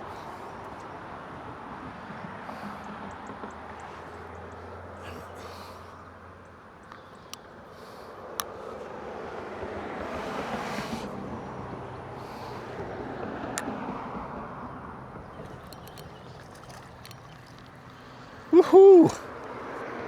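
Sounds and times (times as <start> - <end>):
vehicle passing by: 7.8 - 20.0.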